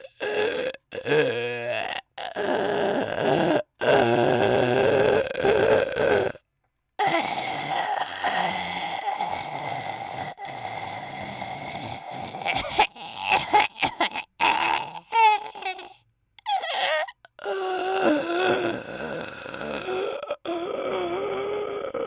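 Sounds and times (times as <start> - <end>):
man imitating snoring: 0.0 - 6.4, 7.0 - 22.0
croaking belch-like vocal sound: 0.8 - 6.4.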